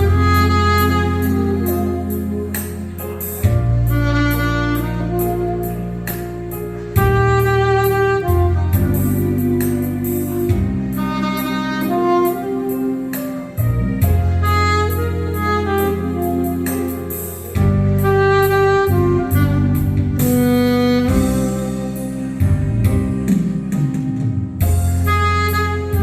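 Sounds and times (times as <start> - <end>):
saxophone melody: 0.0 - 23.8, 24.6 - 26.0
backing track with bass and beat: 0.0 - 26.0.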